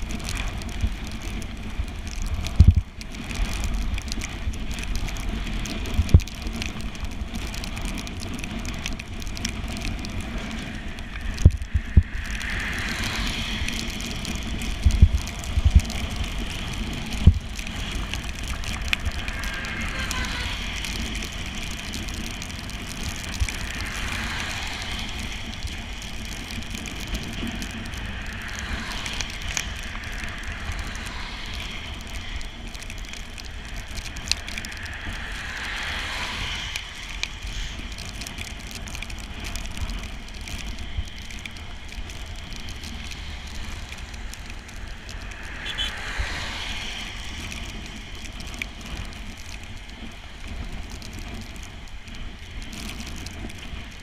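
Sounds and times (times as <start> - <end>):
tyres hissing on wet road: 0.0 - 54.0
wind buffeting microphone: 0.0 - 54.0.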